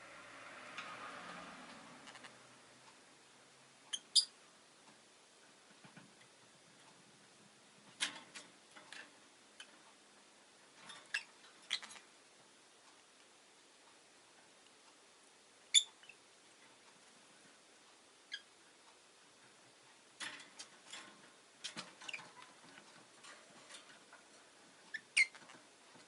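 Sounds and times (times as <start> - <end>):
lovebird chirping: 3.9 - 4.4, 11.1 - 12.0, 15.7 - 16.2, 18.3 - 18.5, 24.9 - 25.4.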